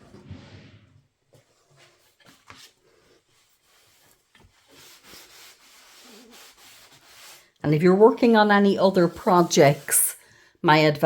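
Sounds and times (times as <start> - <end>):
faint rubbing on glass: 3.4 - 7.5.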